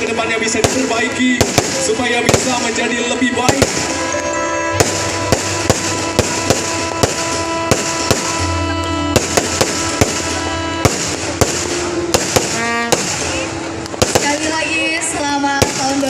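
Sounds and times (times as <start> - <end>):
fireworks bangs: 0.0 - 16.0
music with steady bass: 3.3 - 12.9.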